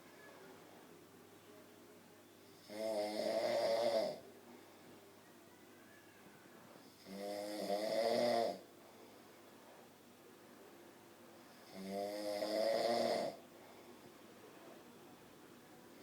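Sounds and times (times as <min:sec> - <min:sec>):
man snoring: 0:02.6 - 0:04.2, 0:07.0 - 0:08.6, 0:11.6 - 0:13.4.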